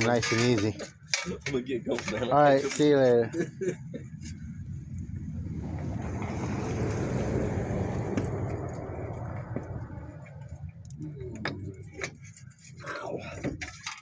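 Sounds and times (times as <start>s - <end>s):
motor vehicle passing by: 4.2s - 11.0s.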